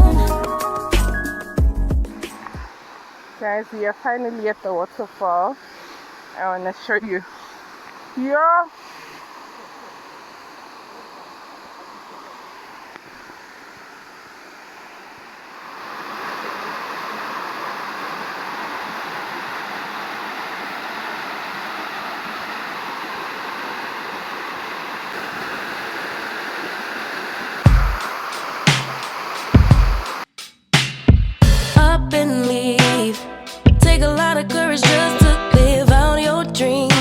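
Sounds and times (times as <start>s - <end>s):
waterfall rushing: 2.2s - 30.3s.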